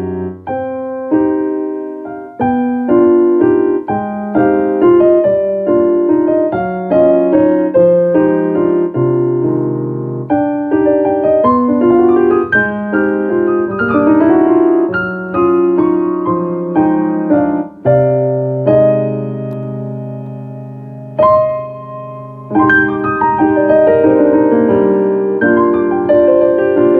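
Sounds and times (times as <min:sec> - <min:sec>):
solo piano melody: 0:00.0 - 0:26.9.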